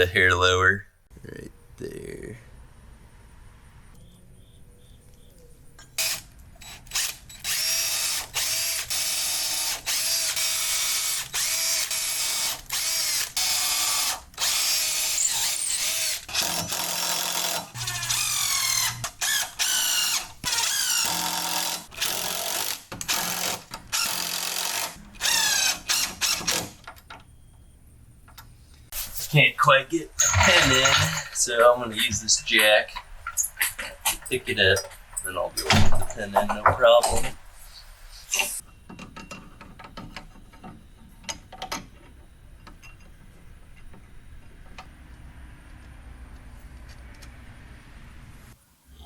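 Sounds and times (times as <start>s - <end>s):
power drill driving screws: 6.0s - 26.7s.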